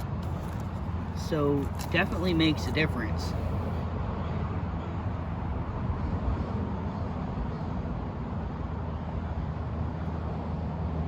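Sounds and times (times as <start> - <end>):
steady low rumble: 0.0 - 8.8.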